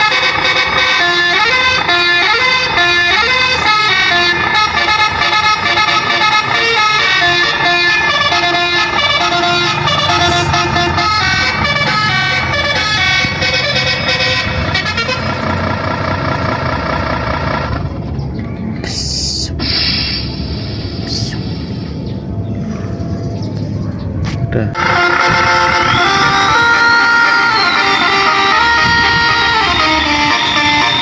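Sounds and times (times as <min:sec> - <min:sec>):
musical bus horn tune: 0:00.0 - 0:17.6, 0:24.8 - 0:31.0.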